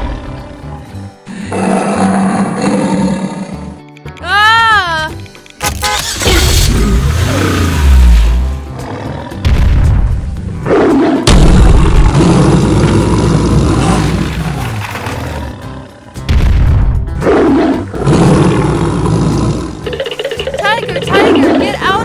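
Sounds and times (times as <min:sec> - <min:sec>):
background music: 0:00.0 - 0:22.0
tiger roaring: 0:01.5 - 0:03.8, 0:06.7 - 0:09.5, 0:10.6 - 0:16.3, 0:17.2 - 0:21.6.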